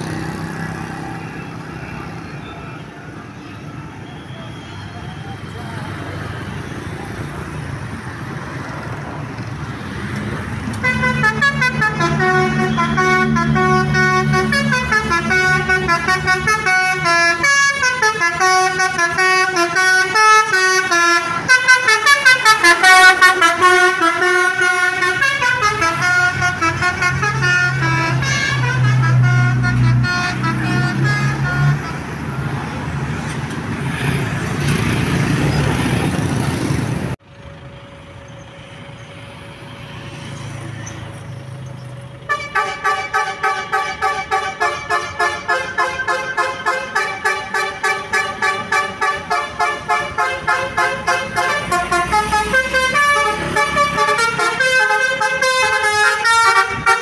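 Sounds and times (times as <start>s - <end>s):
musical horn playing melody: 10.8s - 32.3s, 42.3s - 57.0s
low vehicle engine hum: 35.2s - 44.8s.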